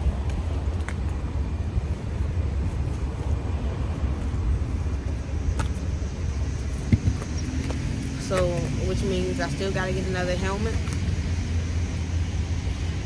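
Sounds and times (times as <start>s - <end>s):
low outdoor rumble: 0.0s - 13.0s.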